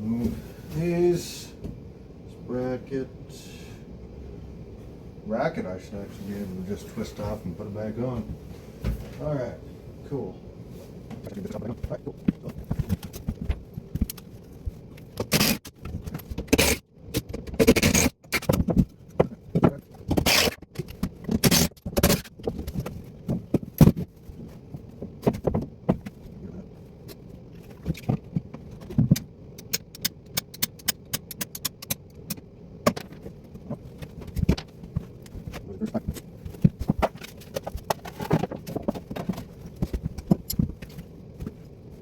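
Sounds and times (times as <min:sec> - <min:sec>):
pipe hardware scraping and knocking: 0:32.9 - 0:41.6.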